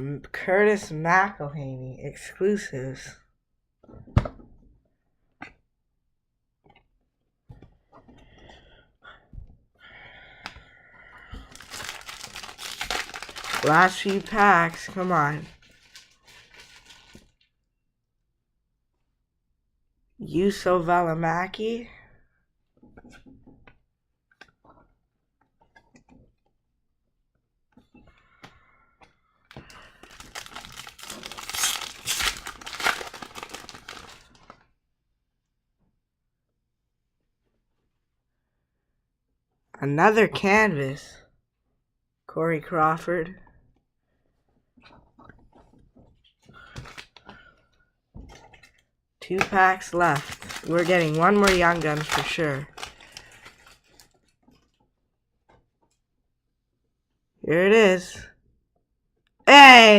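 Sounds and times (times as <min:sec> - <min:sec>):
cards rustling and sliding: 0:11.5 - 0:17.3, 0:30.0 - 0:34.4, 0:49.4 - 0:54.1
wrapper crinkling: 0:11.5 - 0:17.5, 0:29.8 - 0:34.6, 0:49.4 - 0:54.3.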